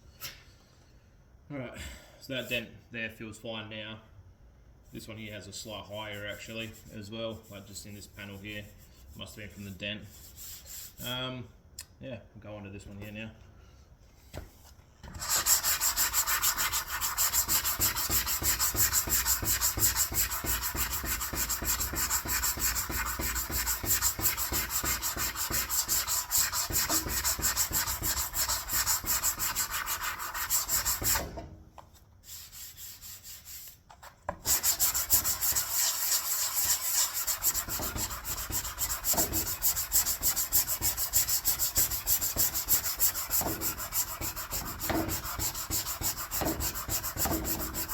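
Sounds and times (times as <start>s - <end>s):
sandpaper sanding body filler: 15.2s - 31.3s, 32.2s - 33.7s, 34.4s - 47.9s.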